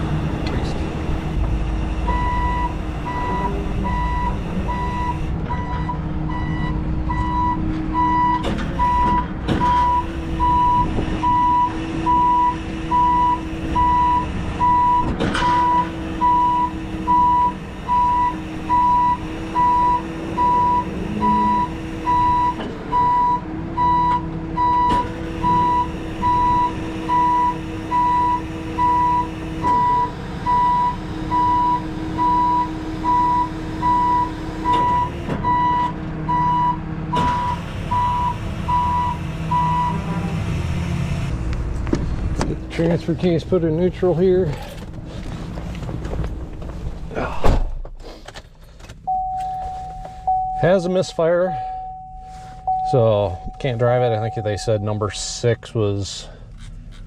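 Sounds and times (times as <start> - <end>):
truck hum: 0.0 - 57.0
backup alarm beeping: 1.1 - 40.1, 49.0 - 55.7.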